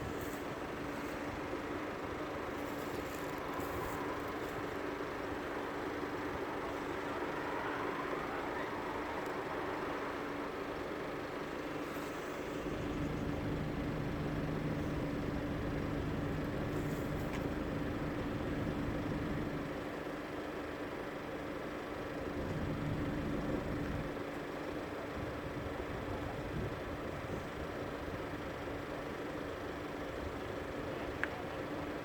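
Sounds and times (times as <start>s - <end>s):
vehicle engine idling: 0.0s - 32.0s
deeper engine note: 12.1s - 19.8s, 22.2s - 24.2s.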